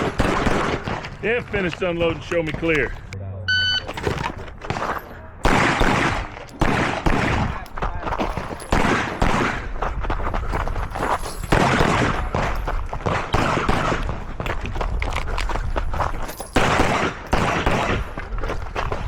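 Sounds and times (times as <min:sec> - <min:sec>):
handgun shots with echo: 0:05.4 - 0:07.6, 0:08.6 - 0:09.7, 0:11.5 - 0:14.2, 0:16.6 - 0:18.1.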